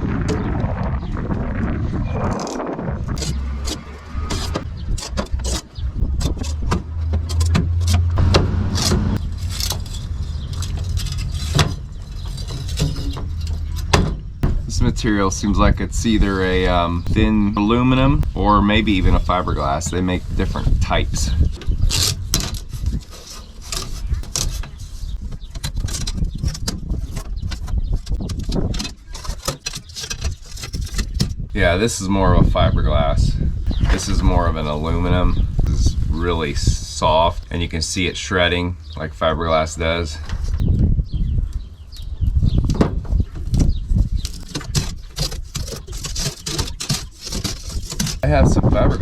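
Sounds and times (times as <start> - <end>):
low rumble: 0.0 - 22.0
window screen mesh crinkling: 44.0 - 48.4.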